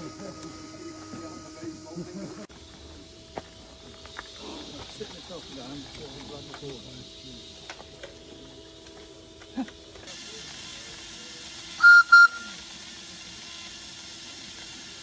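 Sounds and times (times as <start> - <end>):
steam hissing: 0.0 - 15.0
steam whistle toots: 11.8 - 12.6.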